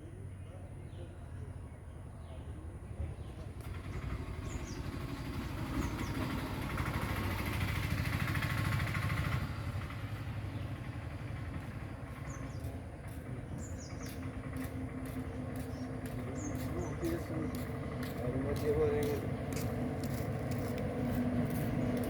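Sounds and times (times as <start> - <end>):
passenger train rumble: 3.4 - 22.0.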